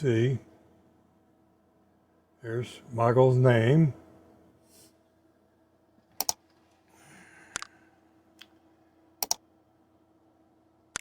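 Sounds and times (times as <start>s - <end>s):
sharp double clicks: 9.2s - 9.4s.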